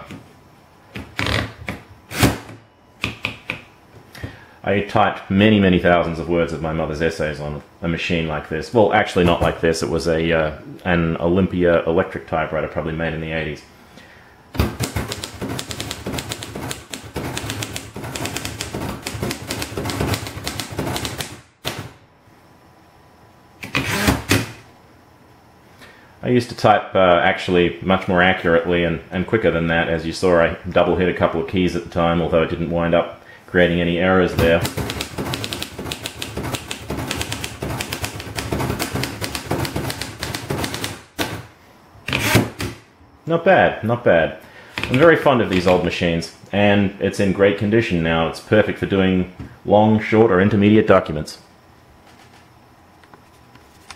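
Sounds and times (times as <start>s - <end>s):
manual typewriter keystrokes clacking: 14.6s - 21.8s, 34.4s - 41.0s.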